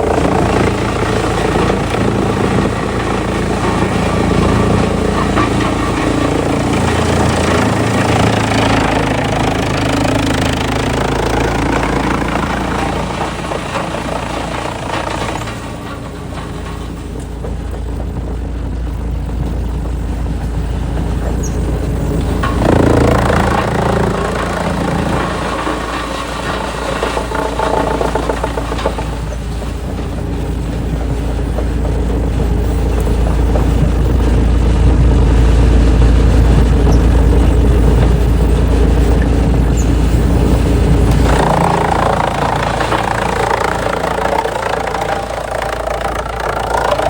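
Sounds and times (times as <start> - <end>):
heavy machinery engine hum: 0.0 - 47.0
dense loud noise: 21.7 - 31.2, 33.2 - 47.0.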